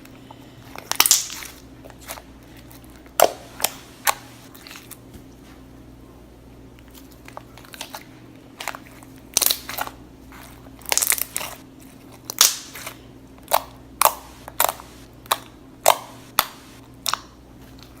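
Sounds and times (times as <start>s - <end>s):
slime crackling and popping: 0.8s - 2.2s, 8.6s - 10.0s, 10.8s - 17.9s.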